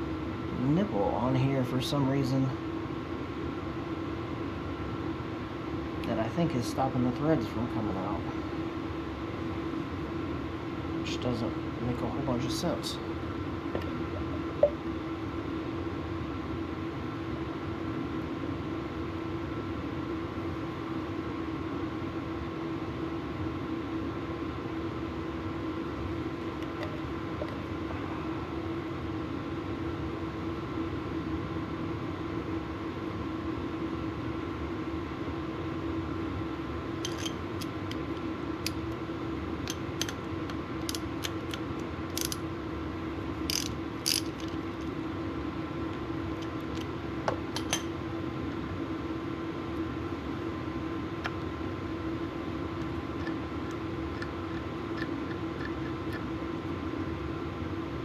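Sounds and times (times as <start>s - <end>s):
faint high whine: 0.0s - 39.8s
low mechanical hum: 0.0s - 58.0s.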